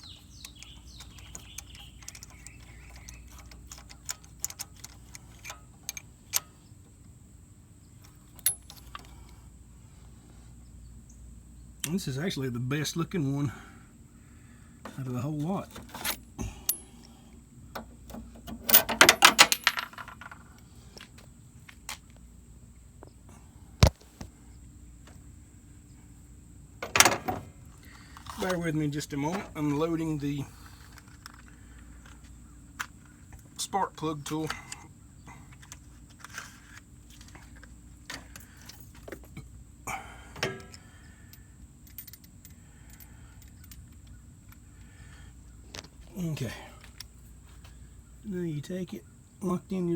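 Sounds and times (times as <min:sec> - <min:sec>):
small metal tools clinking: 0:00.0 - 0:06.5, 0:08.0 - 0:09.2, 0:14.9 - 0:17.1, 0:18.1 - 0:20.5, 0:26.8 - 0:29.8, 0:40.4 - 0:44.6.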